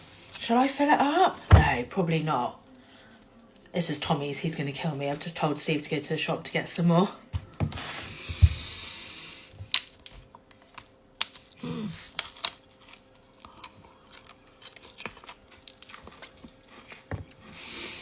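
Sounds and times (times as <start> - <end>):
clicks and crunches of biting: 9.7 - 17.1
low voice hum: 11.6 - 12.1.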